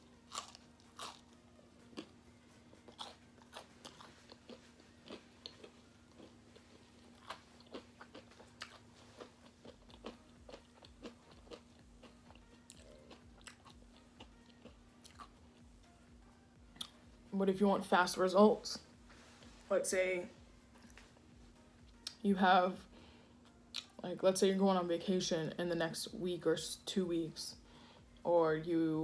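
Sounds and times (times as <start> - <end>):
person chewing and crunching food: 0.0 - 17.1, 23.3 - 24.0.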